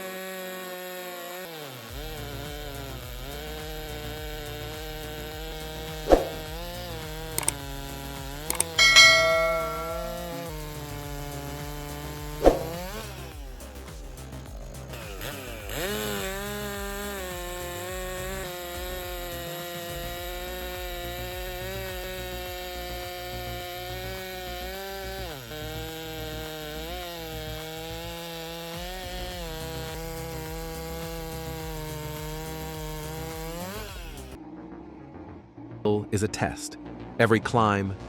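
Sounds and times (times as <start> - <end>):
chainsaw cutting wood: 0.0 - 8.8, 11.2 - 34.4
sharp knock: 6.1 - 6.5, 8.5 - 10.4, 12.4 - 12.8.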